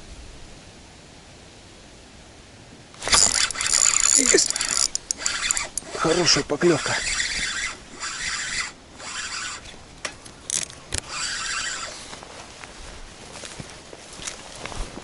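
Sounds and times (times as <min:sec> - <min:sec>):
fishing reel grinding whir: 0:03.0 - 0:09.8, 0:10.5 - 0:12.1
sharp clicks: 0:03.0 - 0:11.9.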